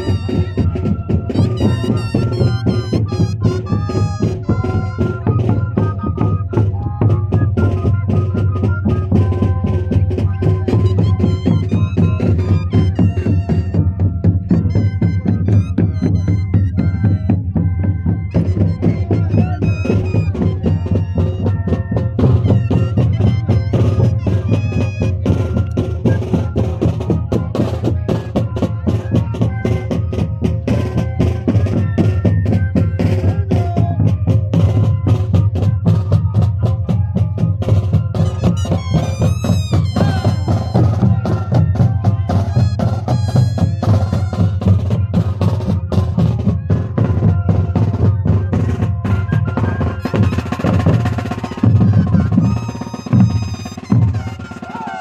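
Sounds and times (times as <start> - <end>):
large duct flutes playing: 0.0 - 55.0
dense drum beat: 32.6 - 54.7.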